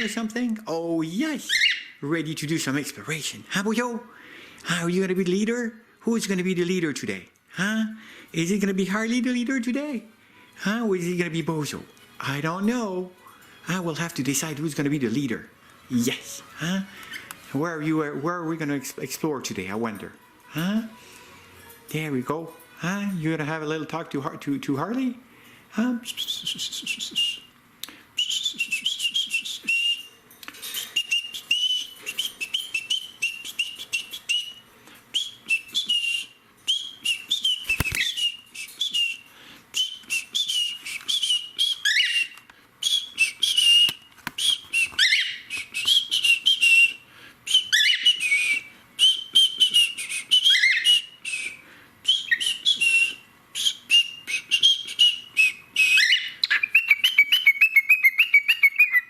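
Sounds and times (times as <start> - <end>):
cockatiel chattering and warbling: 1.5 - 2.0.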